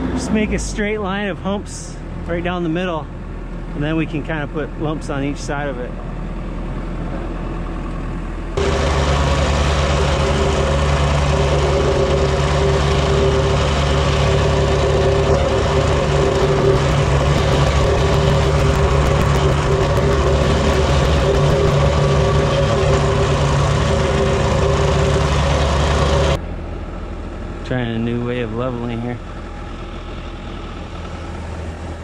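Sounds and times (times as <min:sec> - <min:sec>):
plate compactor engine running: 0:05.9 - 0:28.0.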